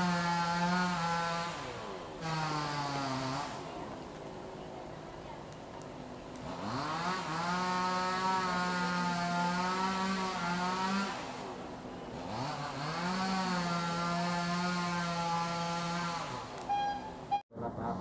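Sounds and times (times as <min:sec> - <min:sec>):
machine engine revving: 0:00.0 - 0:03.8, 0:06.4 - 0:11.5, 0:12.1 - 0:16.6.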